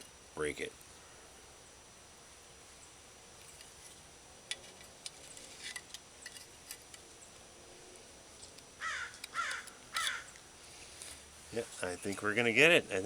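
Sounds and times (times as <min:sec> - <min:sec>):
crow cawing: 0:08.8 - 0:10.4.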